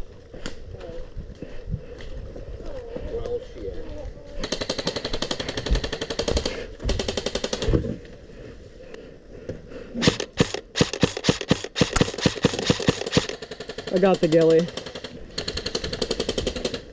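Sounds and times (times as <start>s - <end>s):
airsoft rifle single shots: 10.0s - 13.4s
airsoft rifle full-auto bursts: 10.0s - 14.0s.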